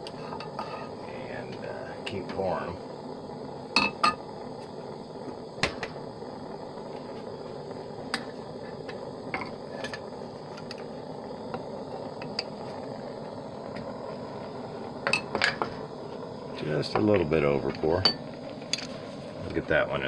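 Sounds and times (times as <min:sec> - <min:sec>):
steady background hum: 0:00.0 - 0:20.0.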